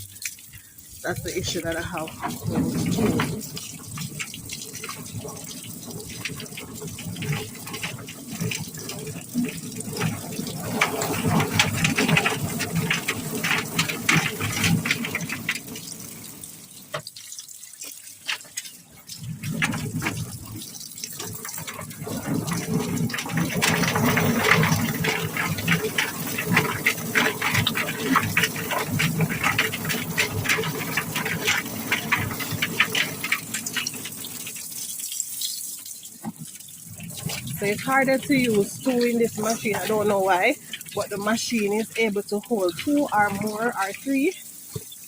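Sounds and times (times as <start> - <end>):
running water: 0.0 - 45.0.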